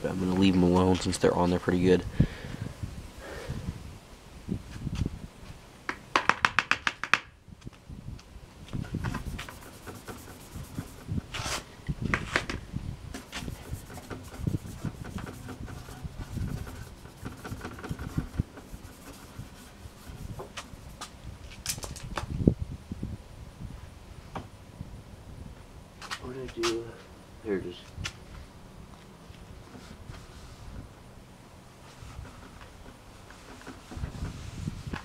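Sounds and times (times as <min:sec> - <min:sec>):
hands rubbing plastic case: 0:08.8 - 0:12.6, 0:13.2 - 0:21.2.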